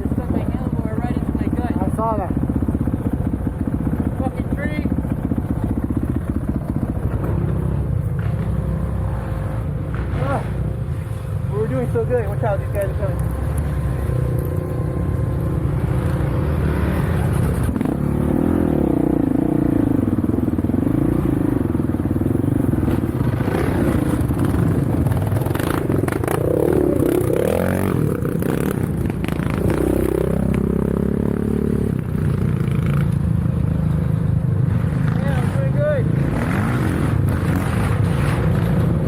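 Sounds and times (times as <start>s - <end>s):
off-road vehicle engine revving: 11.5s - 33.1s, 34.7s - 39.0s.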